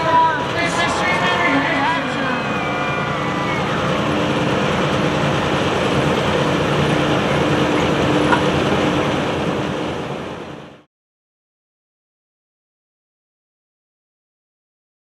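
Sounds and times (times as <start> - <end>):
tractor engine running: 3.8 - 10.8.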